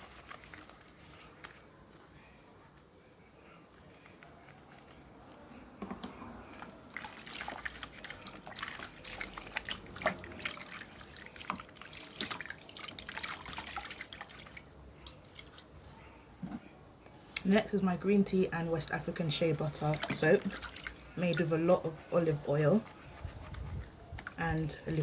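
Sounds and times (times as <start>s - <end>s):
wet hands lathering soap: 0.0s - 1.2s, 6.4s - 15.8s, 18.8s - 25.0s.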